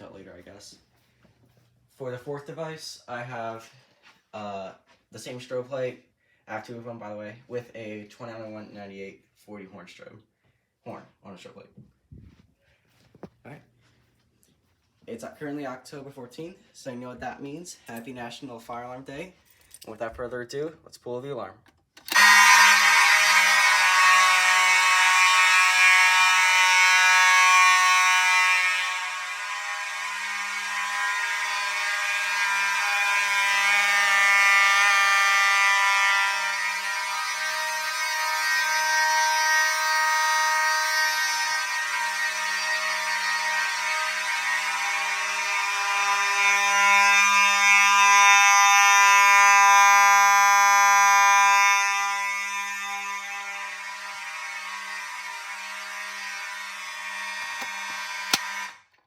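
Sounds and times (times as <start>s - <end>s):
fire alarm horns blaring: 22.1s - 58.9s.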